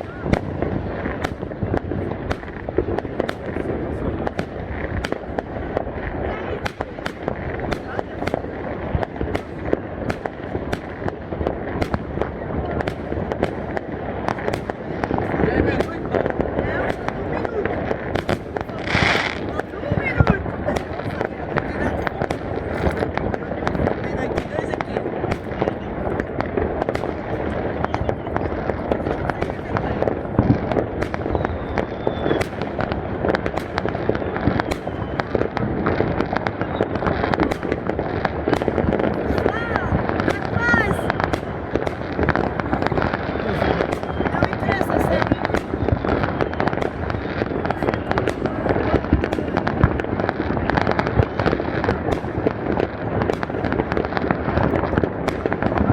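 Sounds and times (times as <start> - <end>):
crowd noise: 0.0 - 55.9
fireworks bangs and crackles: 0.0 - 55.9.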